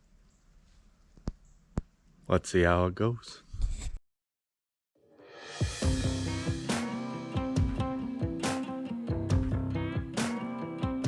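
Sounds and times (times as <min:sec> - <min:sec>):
background music with beat: 0:05.4 - 0:11.0.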